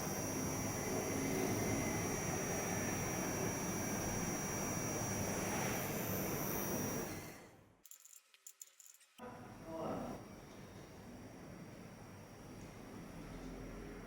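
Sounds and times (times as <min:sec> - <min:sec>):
lamp electrical buzz: 0:00.0 - 0:14.0.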